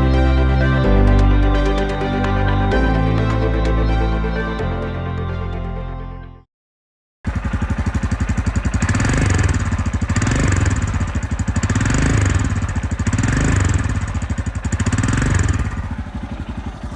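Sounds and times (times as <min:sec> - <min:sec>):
motorcycle engine pulsing: 0:07.3 - 0:16.9.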